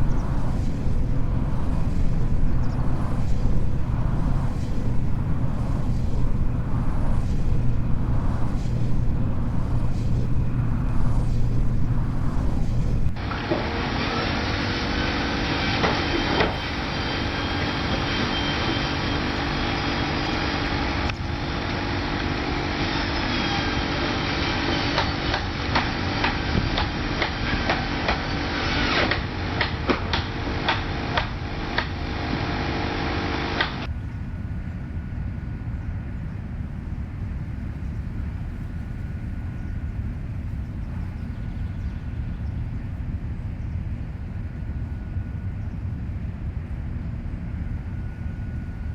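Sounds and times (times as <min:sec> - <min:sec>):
heavy machinery engine running: 0:00.0 - 0:33.9.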